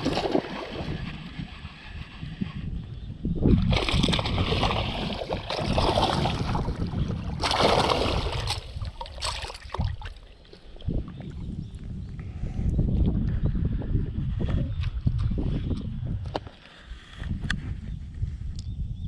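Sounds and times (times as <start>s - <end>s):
water splashing and sloshing: 0.0s - 1.6s, 3.5s - 11.5s
wind rumble on microphone: 0.0s - 19.0s.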